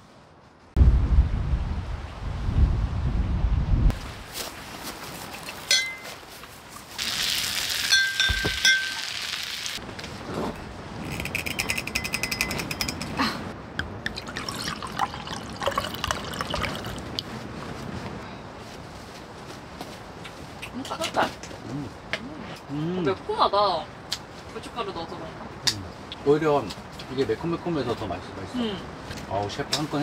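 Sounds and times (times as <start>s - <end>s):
metal utensils clinking on dishes: 11.1s - 13.2s
liquid pouring: 13.8s - 17.3s.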